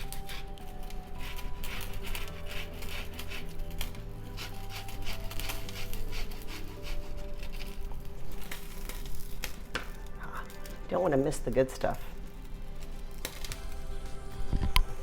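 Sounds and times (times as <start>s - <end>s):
peel rasping on a grater: 0.0s - 7.9s
quiet background music: 0.0s - 15.0s.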